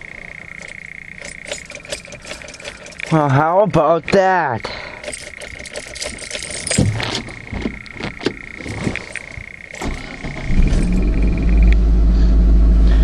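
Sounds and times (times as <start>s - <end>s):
high warning chime: 0.0s - 11.7s
irregular clicks: 0.6s - 3.4s, 5.0s - 7.2s
car engine starting and idling: 7.8s - 13.0s.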